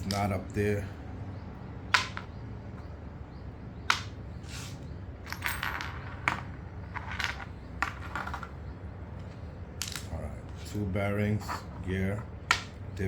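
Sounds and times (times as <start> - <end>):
small metal parts clicking: 9.8 - 10.2.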